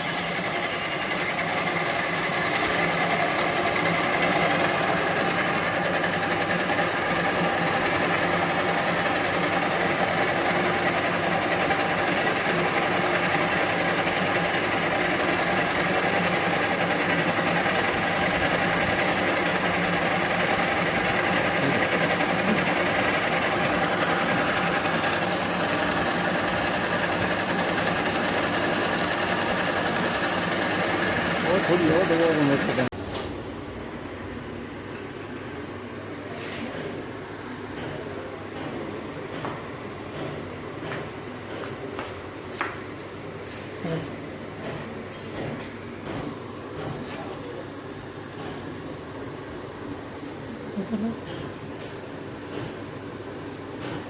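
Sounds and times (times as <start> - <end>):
lathe running: 0.0 - 32.9.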